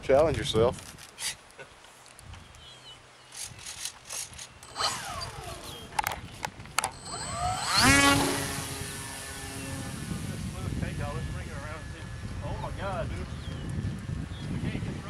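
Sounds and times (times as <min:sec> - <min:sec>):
model airplane handling clicks: 0:03.4 - 0:07.0
propeller motor whine: 0:04.6 - 0:15.0.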